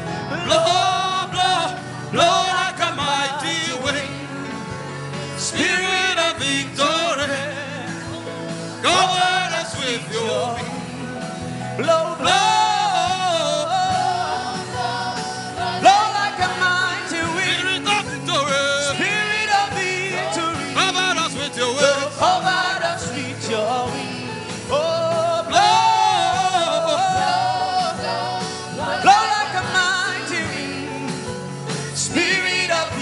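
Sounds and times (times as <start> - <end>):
instrumental backing: 0.0 - 33.0.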